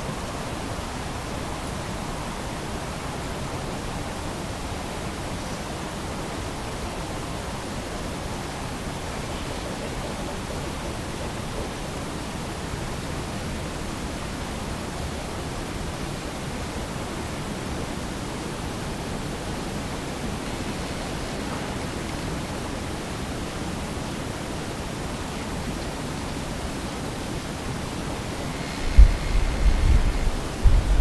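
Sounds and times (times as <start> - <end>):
steady hiss: 12.9 - 31.0.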